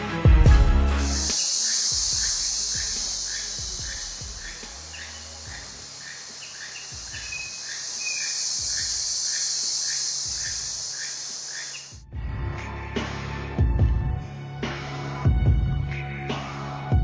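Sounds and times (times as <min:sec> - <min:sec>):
music: 0:00.0 - 0:07.6, 0:11.9 - 0:17.0
high-pitched insect chorus: 0:01.0 - 0:12.0.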